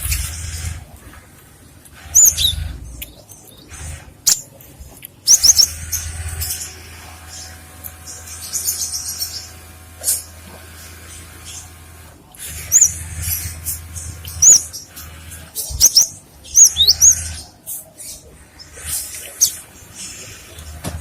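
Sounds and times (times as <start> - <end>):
bird chirping: 2.0 - 4.5, 5.2 - 9.6, 12.4 - 20.7.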